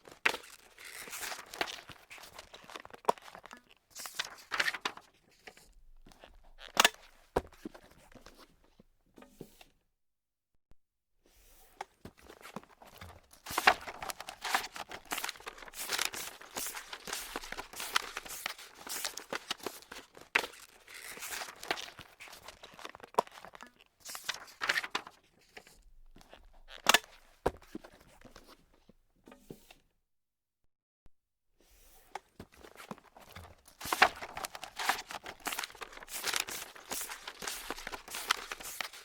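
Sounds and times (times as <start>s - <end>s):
paper being crumpled: 0.0s - 3.4s, 4.0s - 5.0s, 13.3s - 23.5s, 24.1s - 25.2s, 33.0s - 39.0s.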